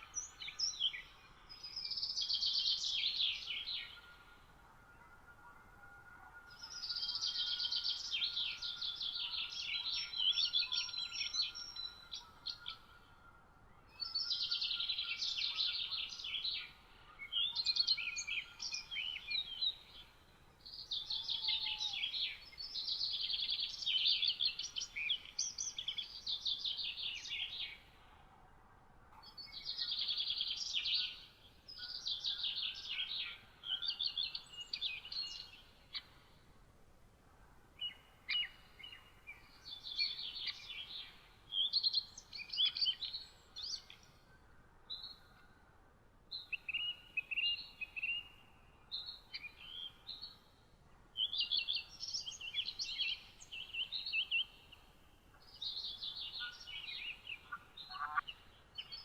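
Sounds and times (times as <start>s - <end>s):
songbirds trilling: 51.2s - 59.0s.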